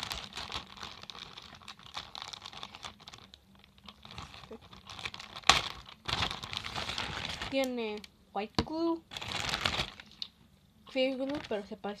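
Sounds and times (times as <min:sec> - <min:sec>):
plastic packaging rustling: 0:00.0 - 0:12.0.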